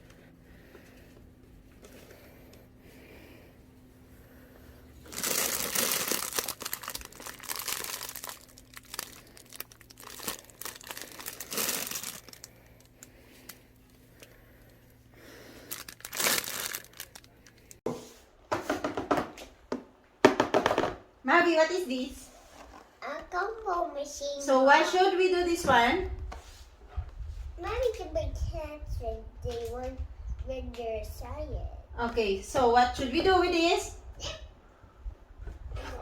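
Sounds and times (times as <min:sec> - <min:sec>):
packaging crumpling and tearing: 0:05.0 - 0:13.6, 0:15.6 - 0:17.8.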